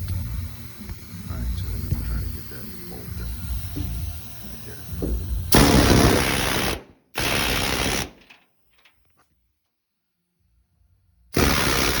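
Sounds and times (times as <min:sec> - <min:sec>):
air hammer hammering in bursts: 0:00.0 - 0:08.4, 0:11.3 - 0:12.0.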